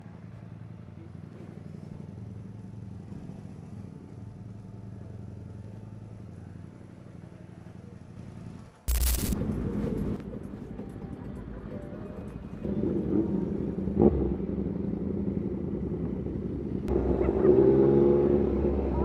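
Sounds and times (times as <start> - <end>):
motorcycle engine idling: 0.0 - 8.8.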